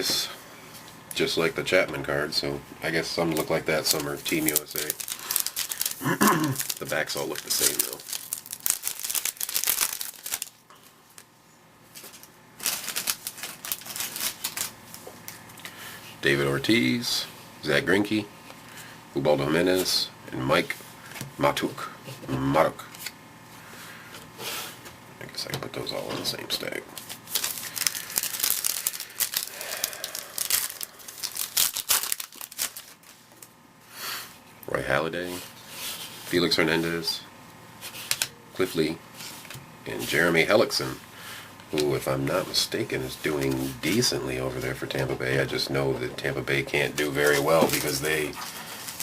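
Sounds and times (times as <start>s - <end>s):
foil wrapper tearing and crinkling: 3.9s - 10.6s, 12.0s - 14.8s, 27.0s - 33.5s, 47.0s - 49.0s.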